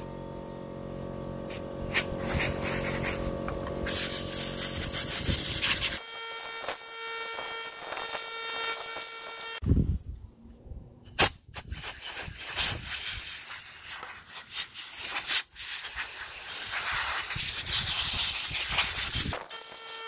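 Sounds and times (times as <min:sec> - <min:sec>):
rubbing and scrubbing: 0:01.5 - 0:03.3.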